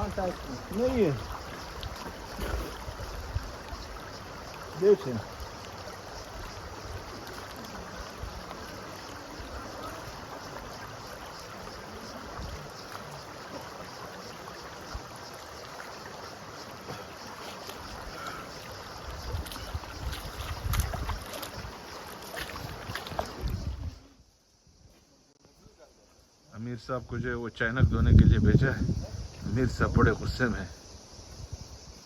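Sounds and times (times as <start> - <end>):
flowing stream rushing: 0.0 - 24.0
wind buffeting microphone: 18.9 - 21.8, 22.5 - 24.1, 27.7 - 32.0.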